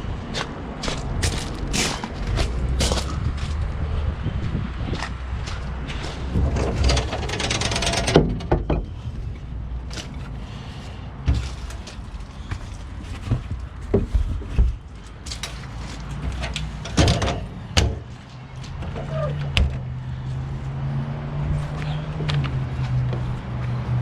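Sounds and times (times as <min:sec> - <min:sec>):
knocks and clunks: 0:05.0 - 0:10.3, 0:11.2 - 0:19.9.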